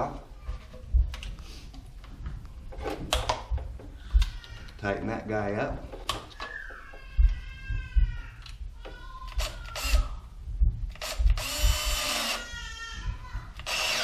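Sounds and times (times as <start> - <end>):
power drill driving screws: 9.4 - 10.0, 11.0 - 12.5, 13.6 - 14.0.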